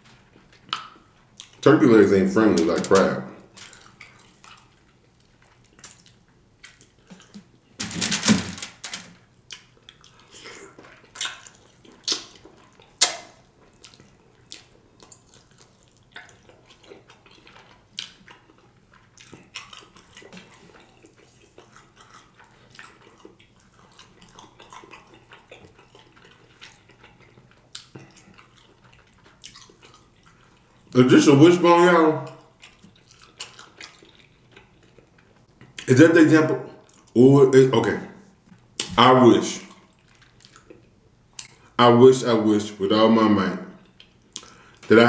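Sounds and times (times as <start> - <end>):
wet chewing: 0.0 - 7.6, 9.5 - 31.0, 32.2 - 35.9, 39.6 - 41.8, 43.8 - 45.0
small clicks: 7.8 - 9.2
lip smacks: 9.5 - 17.4, 43.8 - 44.9.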